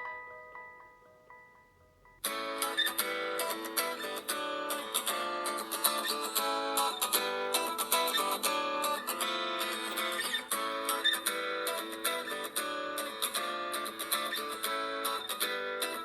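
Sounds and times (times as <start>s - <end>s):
acoustic guitar ringtone: 0.0s - 16.0s.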